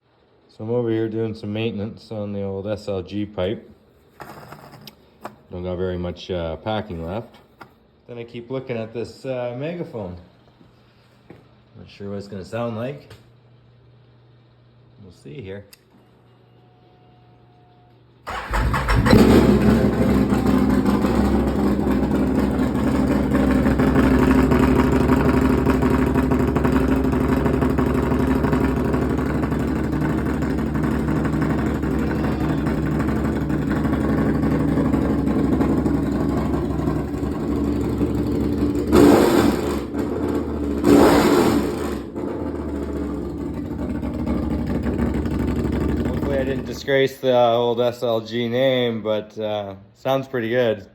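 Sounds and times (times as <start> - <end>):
engine revving: 18.3 - 46.7
motorcycle engine running loud: 18.3 - 46.7.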